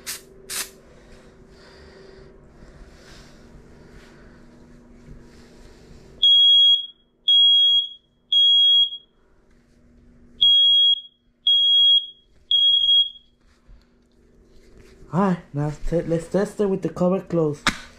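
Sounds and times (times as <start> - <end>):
smoke alarm beeping: 6.2 - 9.2, 10.4 - 13.4.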